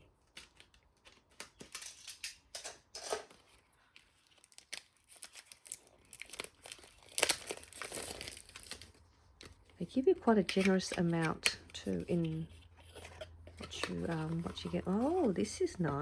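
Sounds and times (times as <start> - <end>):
packaging snipped and torn: 4.0 - 9.6.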